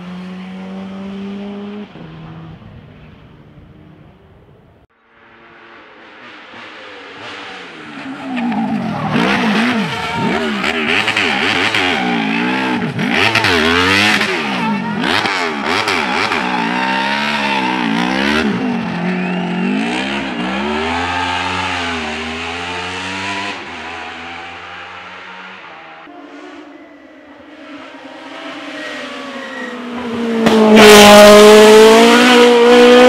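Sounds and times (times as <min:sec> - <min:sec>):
racing car engine at high revs: 0:00.0 - 0:02.6, 0:05.2 - 0:33.0.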